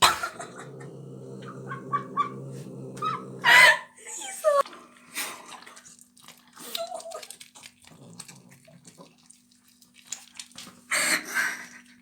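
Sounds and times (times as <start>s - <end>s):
cat chewing and licking: 5.6s - 12.0s.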